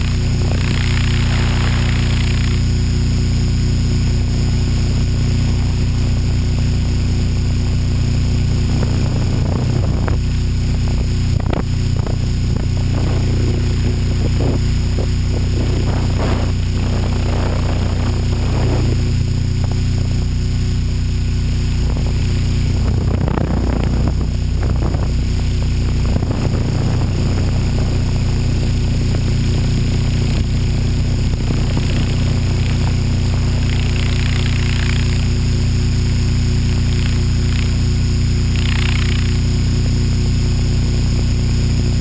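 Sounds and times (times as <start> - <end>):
model helicopter rotor and motor: 0.0 - 42.0
wind noise: 5.3 - 20.5, 21.1 - 35.0.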